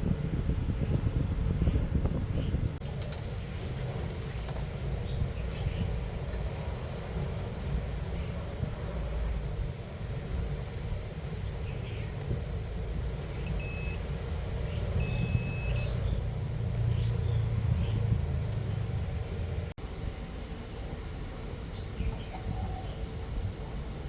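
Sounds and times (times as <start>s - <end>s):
vehicle engine rumbling: 0.0s - 24.0s
short high electronic beeps: 15.0s - 16.0s.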